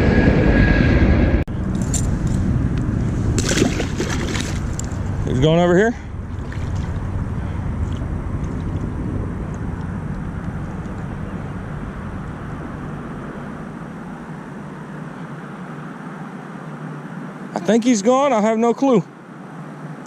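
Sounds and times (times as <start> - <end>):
aircraft passing overhead: 0.0 - 20.0.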